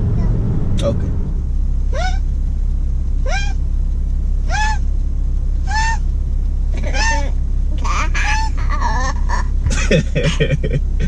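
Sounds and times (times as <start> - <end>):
car interior rumble: 0.0 - 11.0
person imitating bird calls: 3.2 - 3.6, 4.5 - 4.8, 5.7 - 6.0, 6.8 - 9.5.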